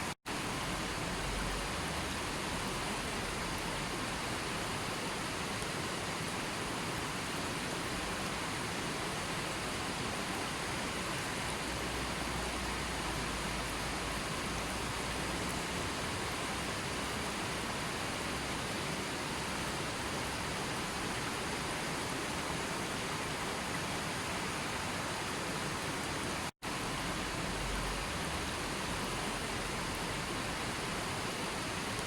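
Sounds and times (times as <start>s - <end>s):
rushing water: 0.0s - 32.0s.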